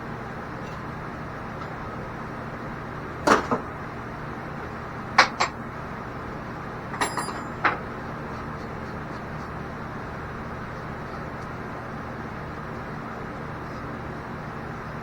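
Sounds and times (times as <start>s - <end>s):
steady background hum: 0.0s - 15.0s
metal tools clinking: 7.0s - 7.8s
ringing metal knock: 7.0s - 7.8s.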